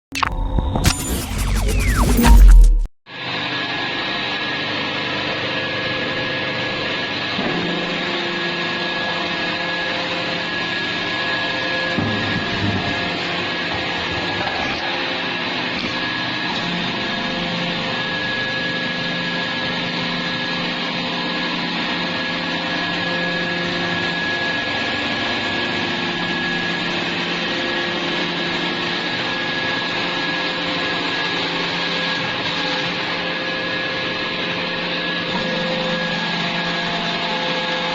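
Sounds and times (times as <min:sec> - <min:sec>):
machine drone with high whine: 0:00.0 - 0:02.9.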